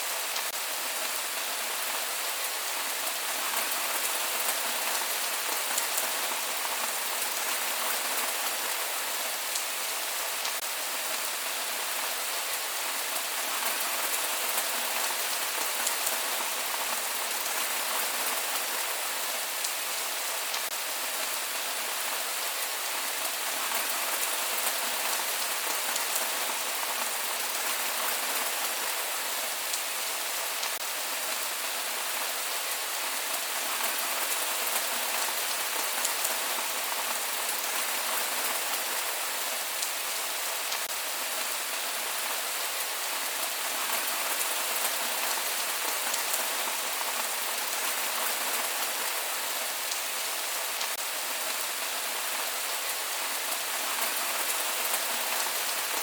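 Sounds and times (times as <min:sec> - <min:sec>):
rain drops pattering on a surface: 0:00.0 - 0:56.0.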